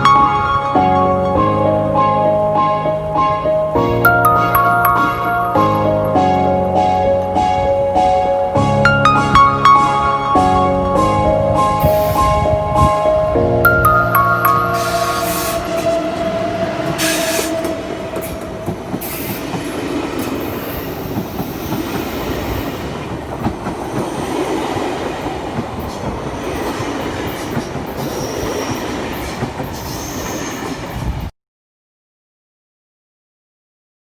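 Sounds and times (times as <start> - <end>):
train rumbling on rails: 0.0 - 31.3
rail clicks: 4.1 - 31.3
high wheel squeals: 14.4 - 23.0, 25.9 - 31.0.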